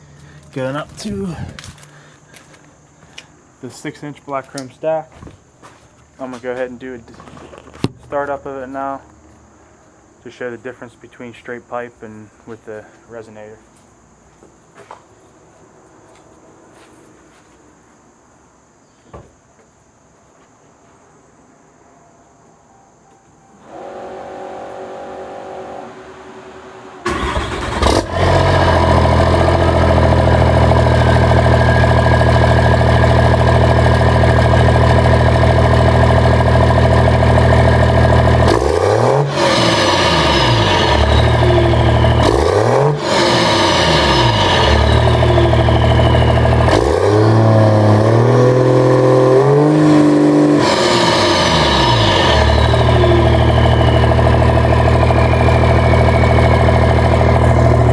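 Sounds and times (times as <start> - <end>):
diesel engine cranking and idling: 0.0 - 5.2, 6.0 - 10.5, 23.6 - 57.9
engine revving: 23.6 - 57.9
turbo whistle: 40.4 - 47.0, 50.9 - 56.4.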